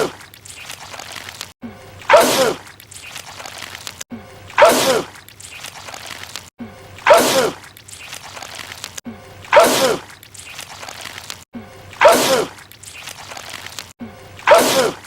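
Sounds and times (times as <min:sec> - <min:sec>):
man sneezing: 0:09.5 - 0:10.0, 0:12.0 - 0:12.5, 0:14.5 - 0:15.0.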